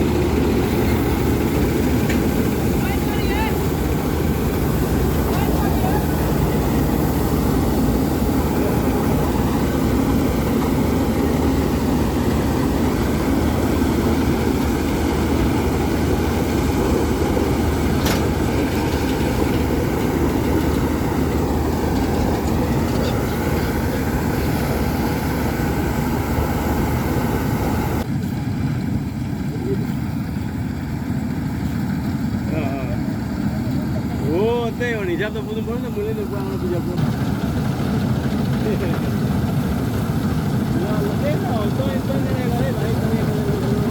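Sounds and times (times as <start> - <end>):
dense mechanical rattle: 0.0 - 28.2
harvester engine humming: 0.0 - 43.9.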